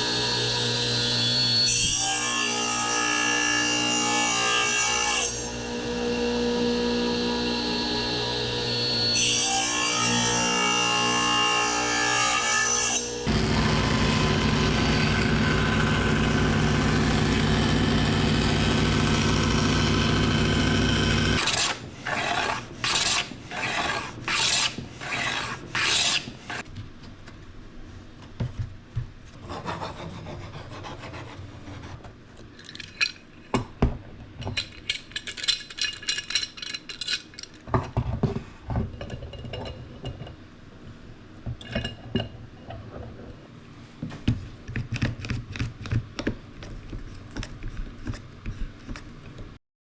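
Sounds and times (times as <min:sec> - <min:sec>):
steady machine noise: 0:13.3 - 0:21.4.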